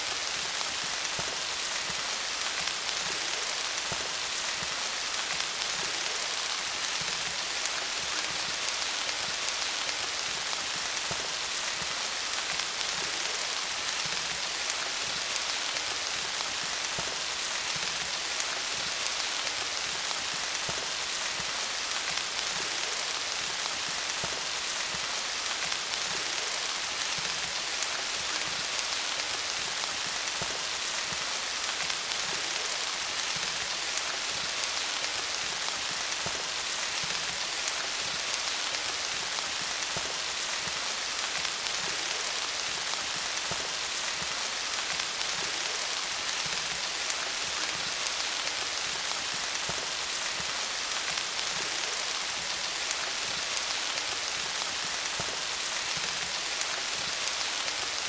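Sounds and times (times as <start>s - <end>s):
rain falling on leaves: 0.0s - 58.0s.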